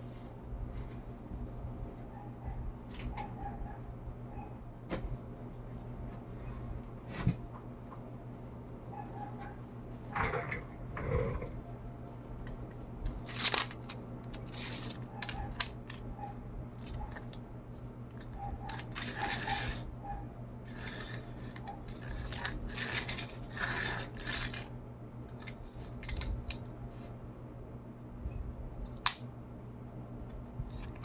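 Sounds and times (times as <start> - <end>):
steady low hum: 0.0 - 31.0
toy truck scraping rattles: 10.2 - 11.5, 13.3 - 16.0, 18.6 - 19.8, 20.7 - 24.7.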